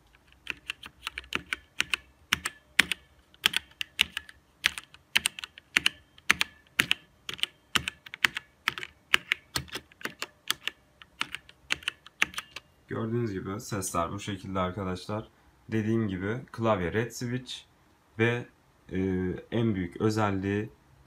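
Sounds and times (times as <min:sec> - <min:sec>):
mechanical keyboard key clacks: 0:00.3 - 0:12.6.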